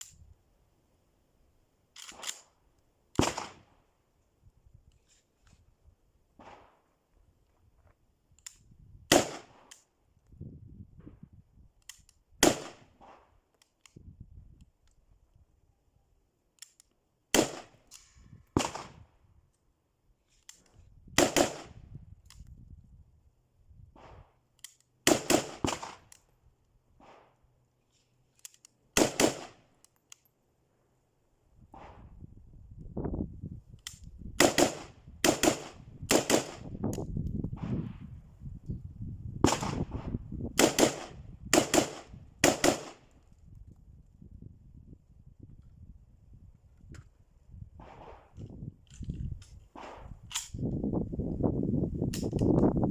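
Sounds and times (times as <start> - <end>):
sharp clicks: 1.9 - 3.5, 8.3 - 8.7, 11.8 - 12.2, 33.7 - 37.7, 47.8 - 50.8, 52.1 - 52.7
rifle shots: 3.2 - 3.7, 9.1 - 9.7, 12.4 - 13.2, 17.3 - 17.8, 18.6 - 19.0, 21.2 - 21.8, 25.0 - 26.1, 29.0 - 29.6, 34.4 - 36.7, 39.4 - 43.1.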